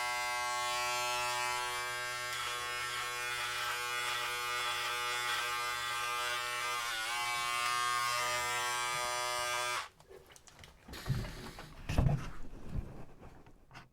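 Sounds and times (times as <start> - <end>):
electric hair clippers buzzing: 0.0 - 9.9.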